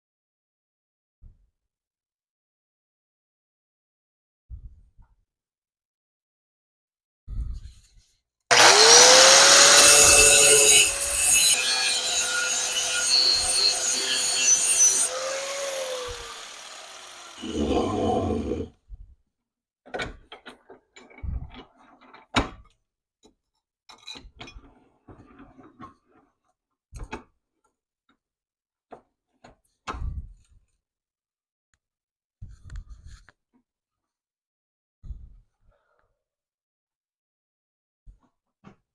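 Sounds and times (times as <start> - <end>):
electric power tool rasping: 8.5 - 18.7.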